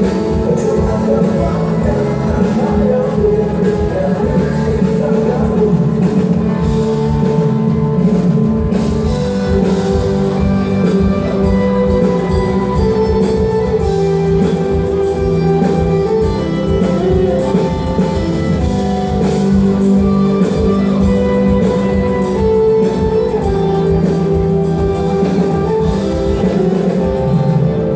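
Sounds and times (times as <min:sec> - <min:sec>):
drum kit: 0:00.0 - 0:27.9
electric guitar: 0:00.0 - 0:27.9.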